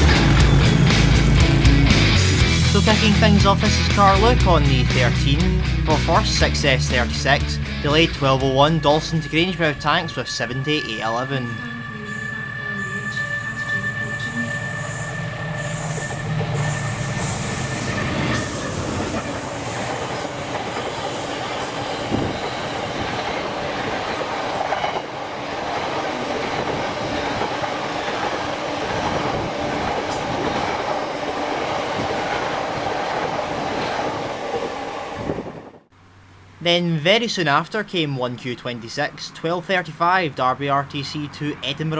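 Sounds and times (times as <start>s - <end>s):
freight train wheels rattling on rails: 0.0s - 2.8s, 6.0s - 35.6s
humming tone: 0.0s - 3.2s, 7.3s - 19.4s.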